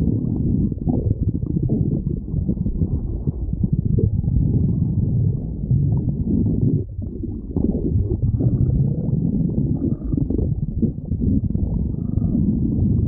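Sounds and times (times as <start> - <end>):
stomach growling: 0.0 - 13.0.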